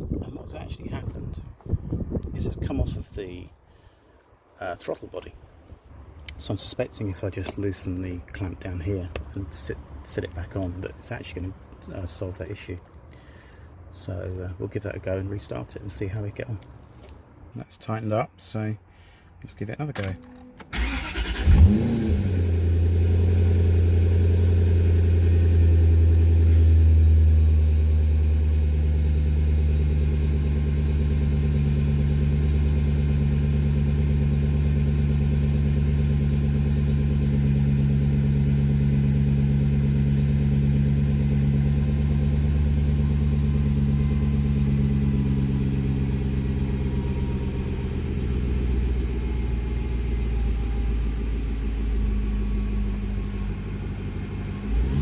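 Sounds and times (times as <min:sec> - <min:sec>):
car engine idling: 0:20.0 - 0:55.0.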